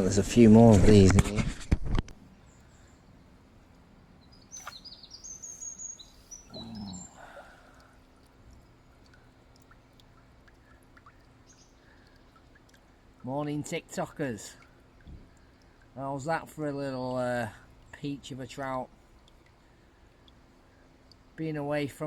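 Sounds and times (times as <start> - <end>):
bird chirping: 2.2 - 10.0, 11.0 - 12.6.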